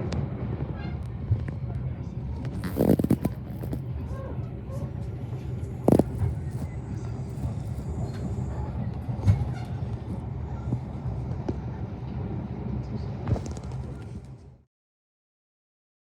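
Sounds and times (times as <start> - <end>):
diesel locomotive engine idling: 3.4 - 14.2.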